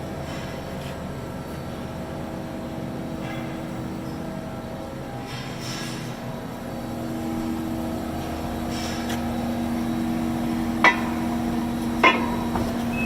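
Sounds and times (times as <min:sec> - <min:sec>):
machine hum: 0:06.3 - 0:13.0.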